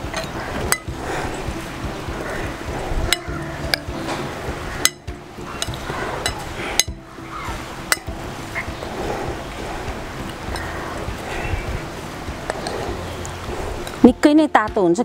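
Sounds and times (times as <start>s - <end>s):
metal utensil clinking against pan: 5.6s - 7.0s.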